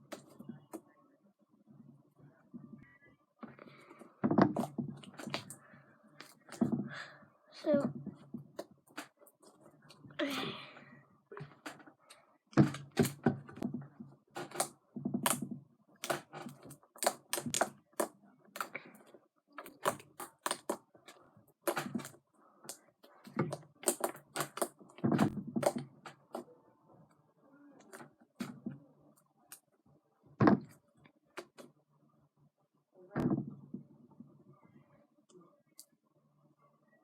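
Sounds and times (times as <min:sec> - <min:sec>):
slime squelching with wet clicks: 0:16.0 - 0:18.8, 0:19.6 - 0:22.0, 0:22.6 - 0:25.0.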